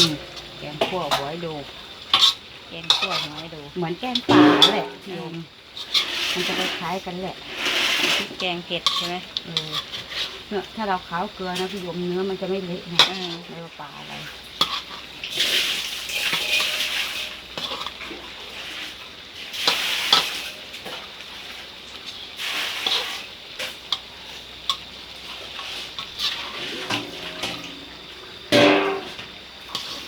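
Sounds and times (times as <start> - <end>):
pots and utensils clinking: 0.0 - 7.0, 12.9 - 13.5, 14.2 - 21.2, 22.0 - 30.0.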